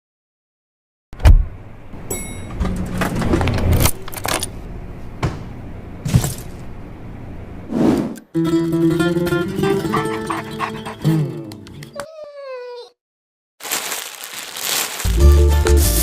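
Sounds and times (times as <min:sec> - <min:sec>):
loud thump: 0:01.2 - 0:01.6.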